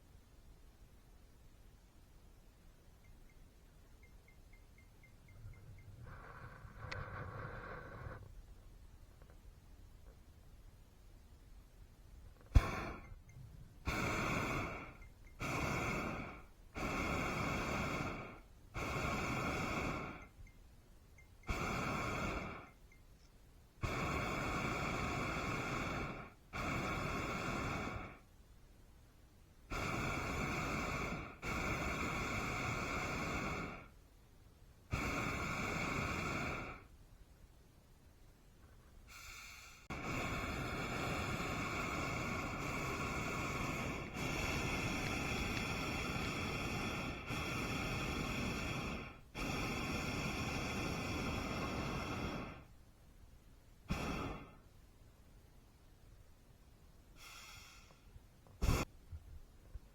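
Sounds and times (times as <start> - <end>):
propane burner blasts: 5.5 - 8.3, 12.4 - 20.5, 21.2 - 23.0, 23.8 - 28.3, 29.6 - 34.0, 34.9 - 36.9, 39.1 - 52.7, 53.8 - 54.7, 57.2 - 58.9.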